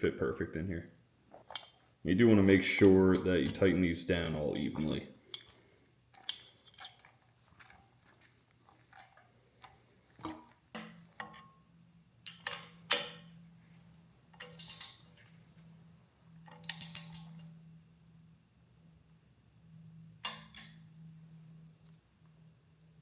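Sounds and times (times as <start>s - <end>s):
tools clinking on metal bolts: 1.5s - 1.8s, 2.7s - 5.5s, 6.2s - 7.1s, 10.2s - 11.6s, 12.3s - 13.3s, 14.4s - 15.2s, 16.5s - 17.4s, 20.2s - 20.8s.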